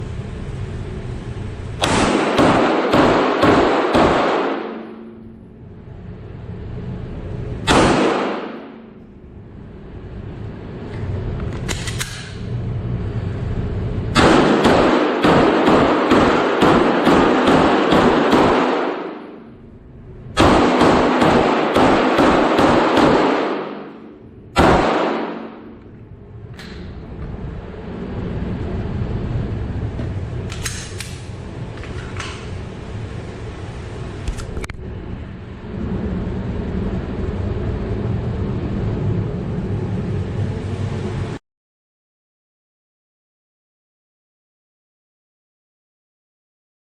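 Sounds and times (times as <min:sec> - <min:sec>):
pistol shots echoing: 0:01.8 - 0:05.2, 0:07.7 - 0:08.9, 0:14.2 - 0:19.6, 0:20.4 - 0:25.8.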